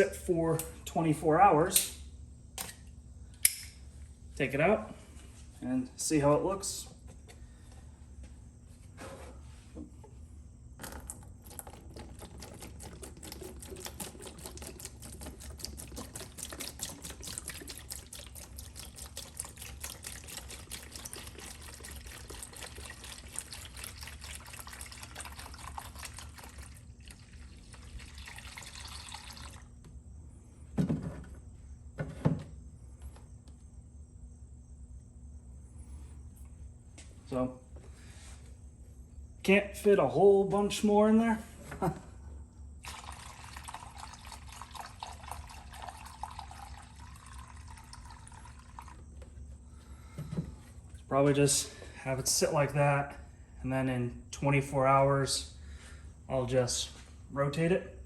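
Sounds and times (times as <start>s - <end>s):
liquid pouring into a bucket: 10.8s - 29.8s, 42.8s - 50.1s.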